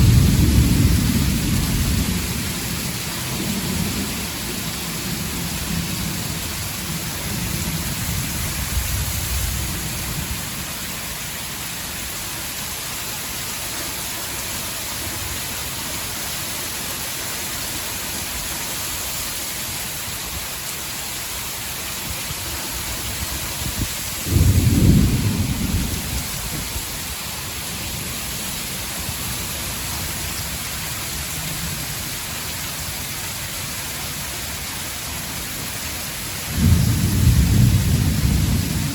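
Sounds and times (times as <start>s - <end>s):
thunder rumbling: 0.0s - 10.7s, 23.1s - 27.0s, 36.5s - 38.9s
heavy rain pouring: 0.0s - 38.9s
thunderclap: 23.6s - 26.8s, 36.6s - 38.9s.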